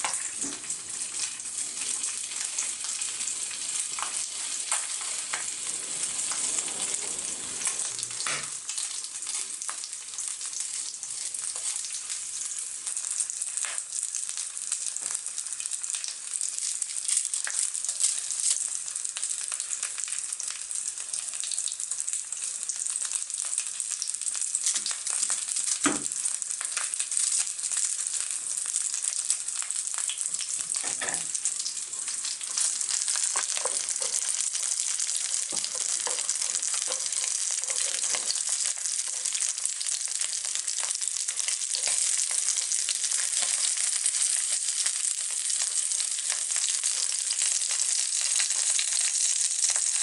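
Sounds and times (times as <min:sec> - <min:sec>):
chicken sizzling in a pan: 0:00.0 - 0:50.0.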